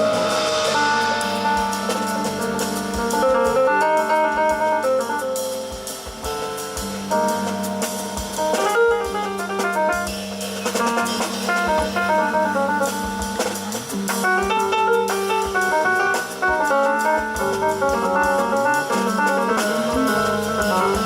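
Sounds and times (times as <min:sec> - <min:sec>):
cymbals struck: 0:00.0 - 0:04.1, 0:10.1 - 0:21.0
bass: 0:00.0 - 0:21.0
drum kit: 0:00.0 - 0:21.0
jazz piano runs: 0:00.0 - 0:21.0.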